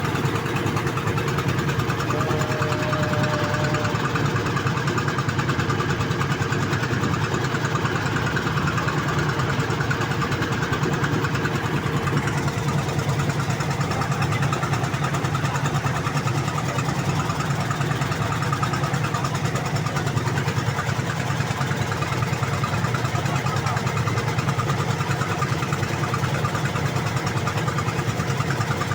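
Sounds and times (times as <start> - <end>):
engine idling: 0.0 - 28.9.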